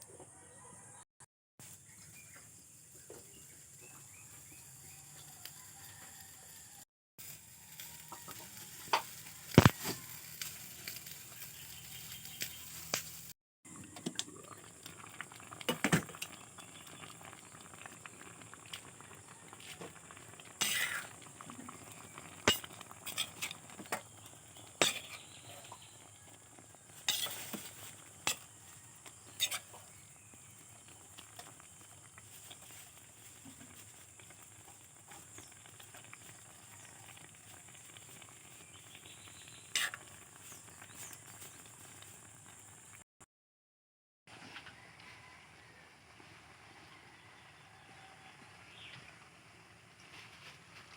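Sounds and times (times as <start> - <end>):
metal utensil clinking cookware: 21.9 - 25.8, 27.0 - 28.6, 29.2 - 29.8.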